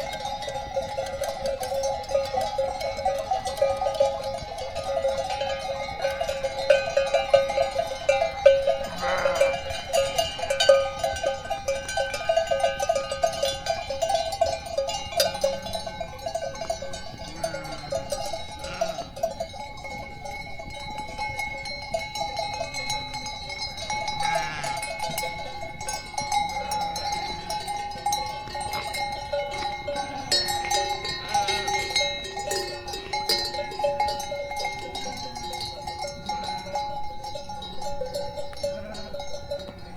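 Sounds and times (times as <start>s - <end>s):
animal bells clanking: 0.0s - 39.9s
sheep and goats bleating: 8.1s - 10.7s, 16.6s - 19.3s, 24.1s - 25.3s.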